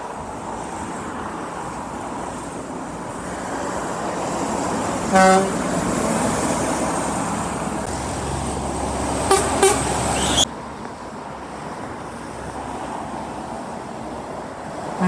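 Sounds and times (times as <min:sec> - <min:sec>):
heavy vehicle engine rumble: 0:00.0 - 0:12.7
road traffic passing: 0:00.0 - 0:15.0
truck horn blast: 0:05.1 - 0:05.7, 0:09.2 - 0:10.4.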